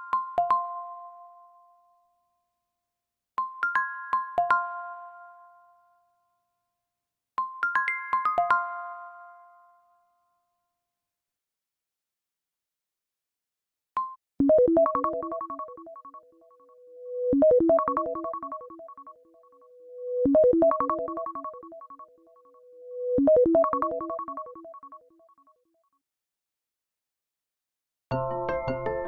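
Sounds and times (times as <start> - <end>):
phone ringtone melody: 14.5 - 16.6, 17.4 - 22.6, 23.2 - 25.0.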